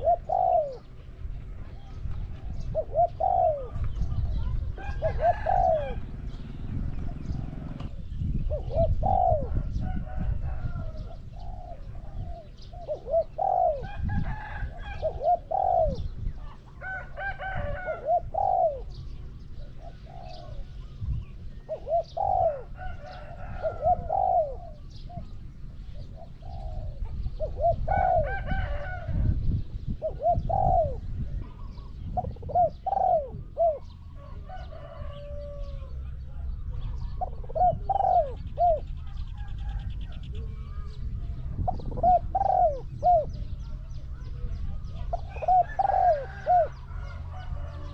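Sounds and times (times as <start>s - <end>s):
doves cooing: 0.0s - 47.9s.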